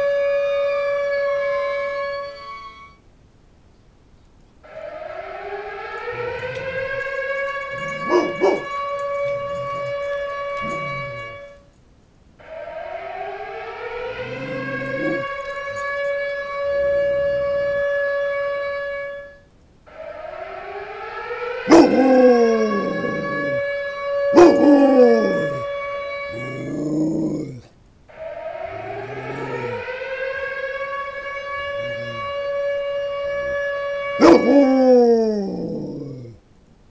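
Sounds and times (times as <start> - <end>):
siren wailing: 0.0 - 3.0, 4.6 - 11.6, 12.4 - 36.4
dog howling: 5.4 - 11.6, 13.8 - 18.6, 21.6 - 36.4
dog yelping howls: 6.0 - 11.5, 14.1 - 18.0, 21.7 - 27.7, 28.6 - 30.8, 31.6 - 32.5, 33.4 - 36.4.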